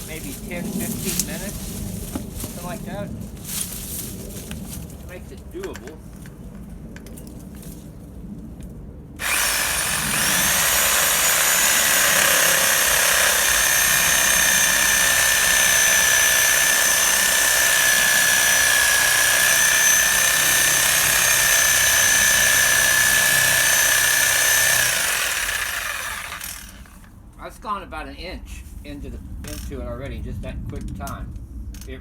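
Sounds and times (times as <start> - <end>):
reciprocating saw whining: 9.2 - 27.1
saw blade rasping in wood: 9.2 - 27.1.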